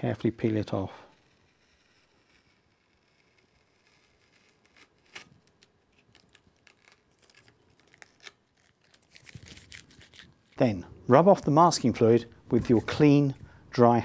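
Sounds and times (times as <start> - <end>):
masking tape peeling off paper: 0.4 - 10.8.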